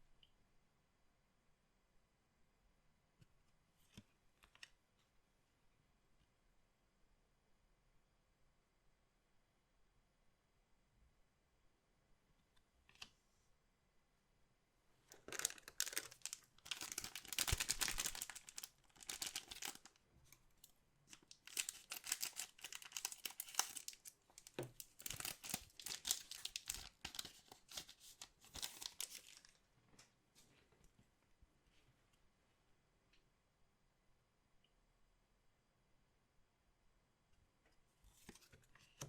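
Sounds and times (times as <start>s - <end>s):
plastic wrapping tearing and crinkling: 15.1s - 20.0s, 21.1s - 29.5s.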